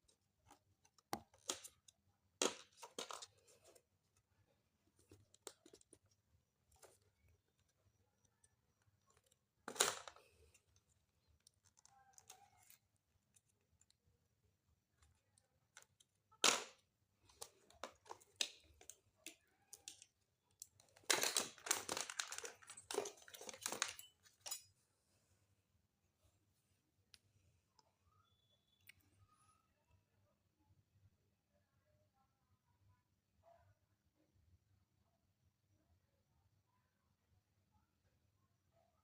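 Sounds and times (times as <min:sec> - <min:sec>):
handling clicks and knocks: 0:15.7 - 0:24.7.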